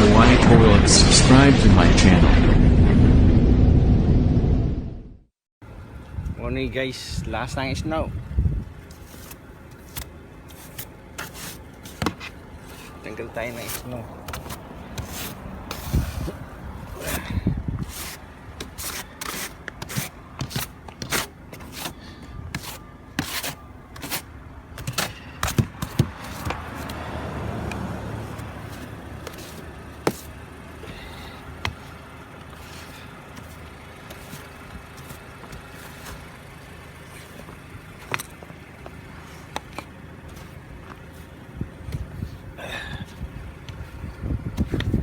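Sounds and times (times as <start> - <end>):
shovel scraping snow: 8.9 - 27.0, 28.2 - 36.2.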